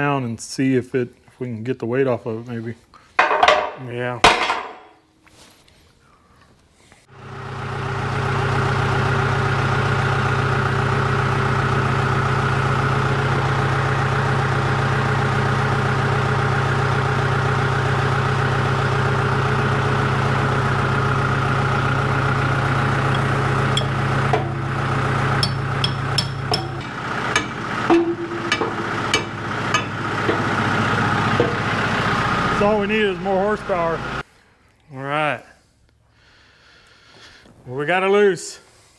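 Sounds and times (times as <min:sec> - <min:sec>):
diesel engine idling: 0:07.1 - 0:34.3
diesel engine starting: 0:07.1 - 0:34.4.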